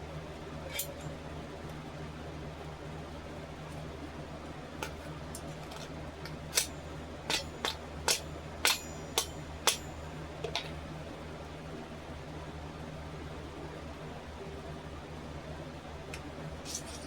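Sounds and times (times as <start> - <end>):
metal fittings clicking: 16.7 - 17.0.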